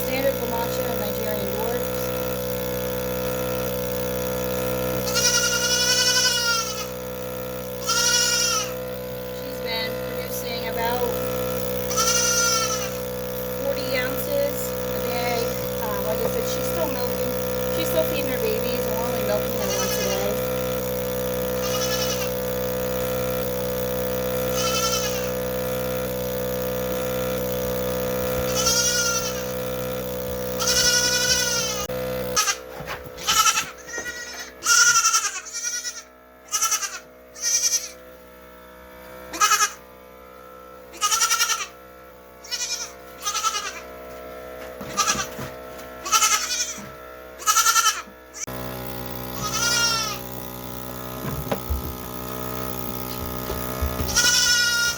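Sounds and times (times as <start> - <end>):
milker pump motor humming: 0.0 - 54.9
goat kids bleating: 4.9 - 7.0, 7.8 - 8.8, 11.9 - 13.0, 18.7 - 20.4, 21.6 - 22.4, 24.5 - 25.4, 28.4 - 29.7, 30.6 - 38.0, 39.3 - 39.8, 40.9 - 41.8, 42.4 - 44.0, 44.8 - 48.5, 49.4 - 50.2, 53.9 - 54.9.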